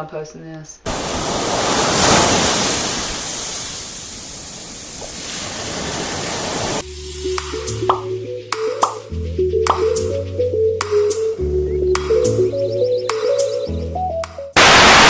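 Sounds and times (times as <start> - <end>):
music: 6.8 - 14.6
loud even rushing noise: 14.6 - 15.0.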